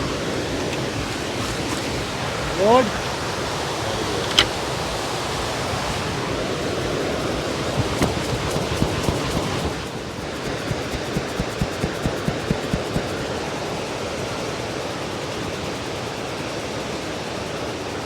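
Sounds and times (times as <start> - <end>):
sharp click: 4.3 - 4.6.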